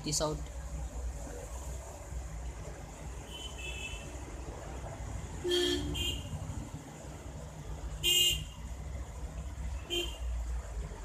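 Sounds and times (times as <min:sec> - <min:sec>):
road traffic rumble: 0:00.0 - 0:11.0
vehicle horns tooting: 0:03.3 - 0:04.1, 0:05.4 - 0:06.3, 0:08.0 - 0:08.6, 0:09.8 - 0:10.3.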